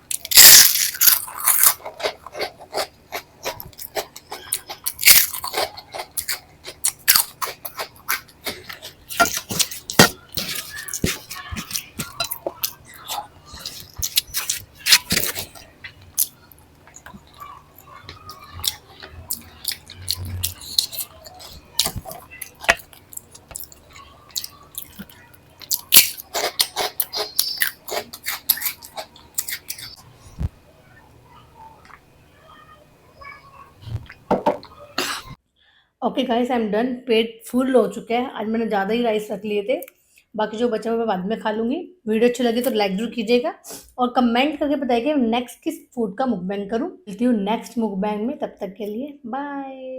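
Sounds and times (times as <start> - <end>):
wet chewing and lip-smacking: 0.1 - 30.5.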